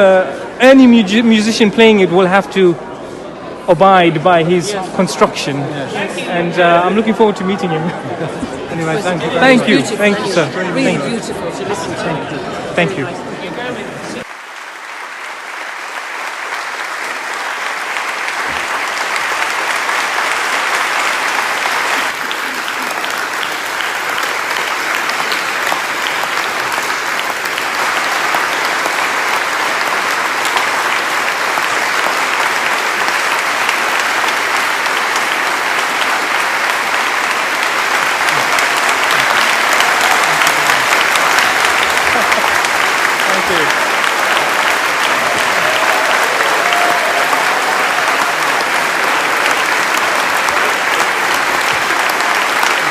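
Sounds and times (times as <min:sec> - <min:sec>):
audience applauding: 0:13.0 - 0:52.9.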